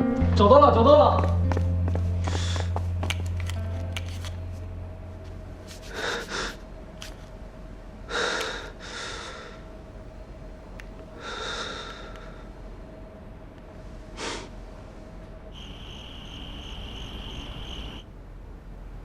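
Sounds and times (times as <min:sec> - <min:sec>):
person breathing heavily: 0:02.2 - 0:02.8, 0:05.8 - 0:06.6, 0:08.1 - 0:09.7, 0:11.2 - 0:12.6, 0:14.0 - 0:14.6.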